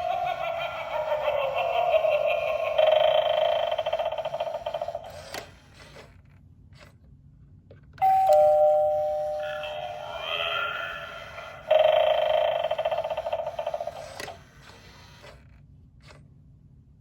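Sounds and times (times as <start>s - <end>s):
ding-dong doorbell chime: 8.0s - 9.9s.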